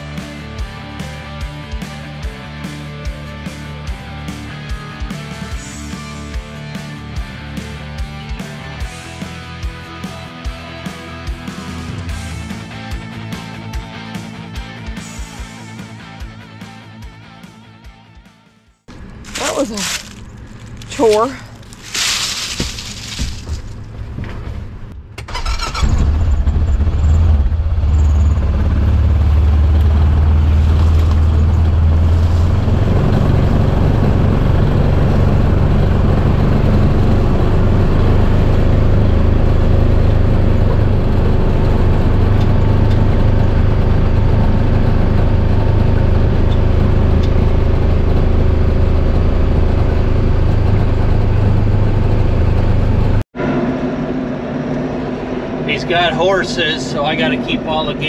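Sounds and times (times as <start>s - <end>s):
heavy machine engine running: 18.9s - 58.0s.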